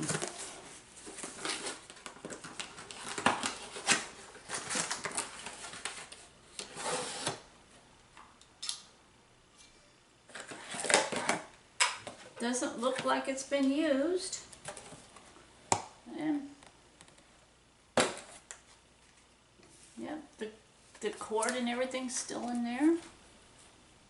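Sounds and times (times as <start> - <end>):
packaging rustling: 0.0 - 6.3.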